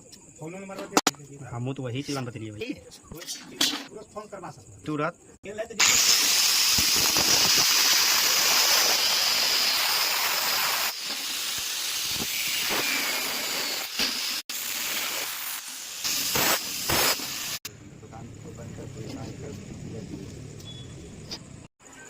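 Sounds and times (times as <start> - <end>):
welding arc hissing and crackling: 5.7 - 17.7.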